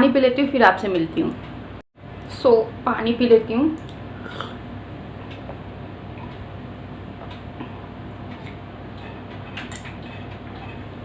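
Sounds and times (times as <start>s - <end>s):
low room hum: 0.0s - 11.0s
person swallowing water: 3.8s - 4.6s.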